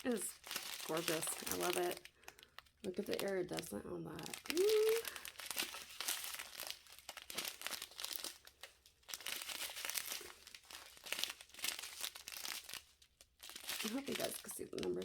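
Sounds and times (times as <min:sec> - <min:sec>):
plastic packets crinkling: 0:00.0 - 0:15.0.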